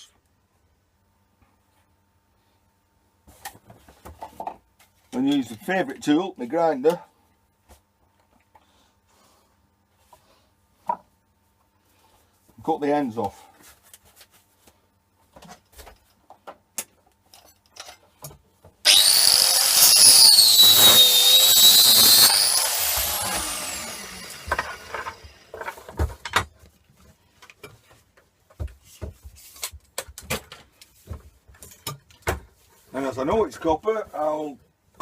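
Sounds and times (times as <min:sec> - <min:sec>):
angle grinder cutting cable: 0:18.8 - 0:25.8.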